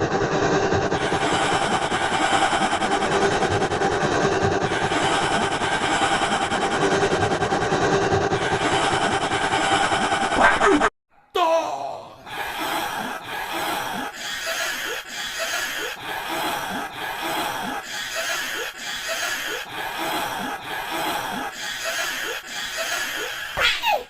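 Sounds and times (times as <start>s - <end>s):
looped cartoon vocal sound: 4.2s - 24.0s.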